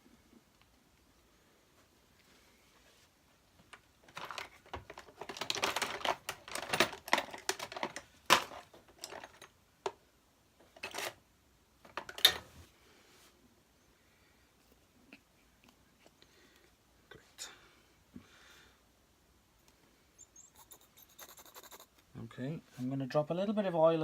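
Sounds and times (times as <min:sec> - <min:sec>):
small hard parts clicking and rattling: 0:03.7 - 0:10.0, 0:10.6 - 0:11.2.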